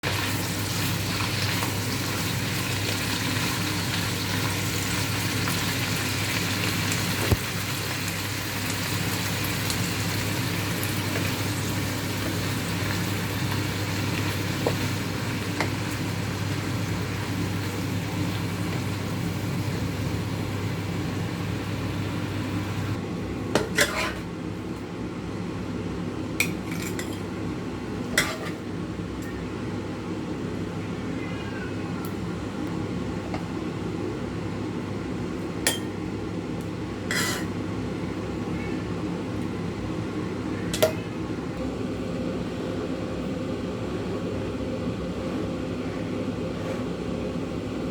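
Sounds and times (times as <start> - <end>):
stir-fry sizzling in a pan: 0.0 - 23.0, 23.6 - 24.3, 28.0 - 28.7, 37.0 - 37.8.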